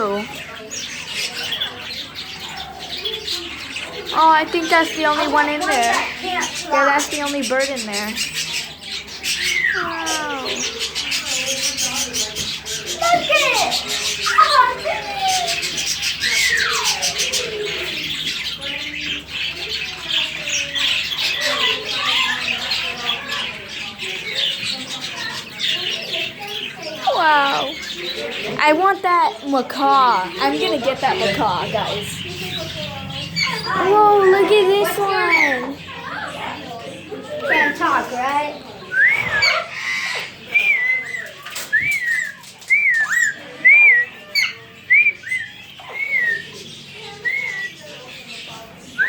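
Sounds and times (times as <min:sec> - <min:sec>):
parrots squawking and chirping: 0:00.0 - 0:49.0
parrot whistling: 0:38.8 - 0:46.6.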